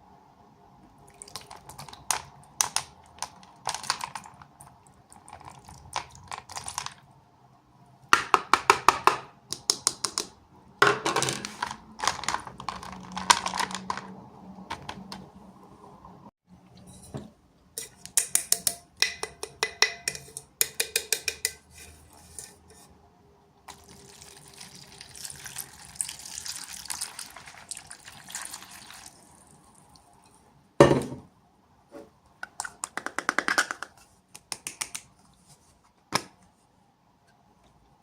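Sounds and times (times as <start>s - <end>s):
object thump: 30.8s - 31.3s.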